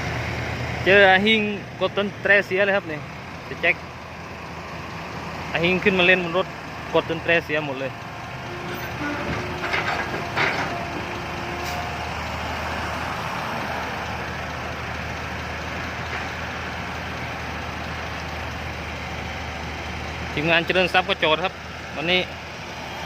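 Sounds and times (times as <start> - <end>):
heavy diesel engine running: 0.0 - 23.0
short clattering noises: 8.6 - 11.9.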